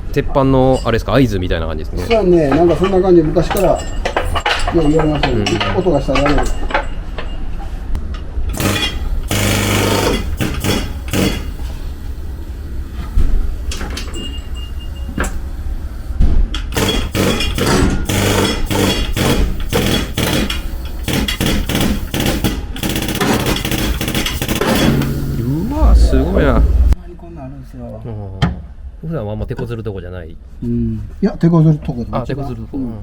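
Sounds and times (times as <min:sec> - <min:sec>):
hammer knocking steel panel: 0:21.1 - 0:26.9
low steady hum: 0:24.8 - 0:27.2.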